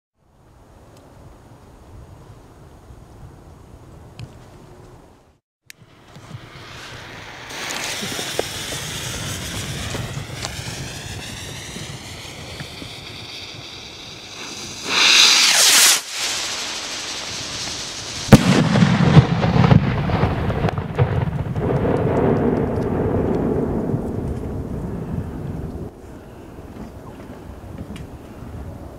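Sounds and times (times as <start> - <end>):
rocket hissing: 5.7 - 20.8
long rolling echo: 5.8 - 26.5
loud bang: 6.2 - 24.4.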